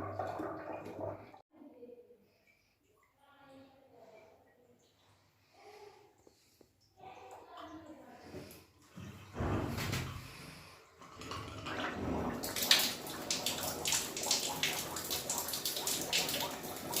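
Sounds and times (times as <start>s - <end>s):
water splashing from a tap: 0.0s - 1.4s, 7.3s - 17.0s.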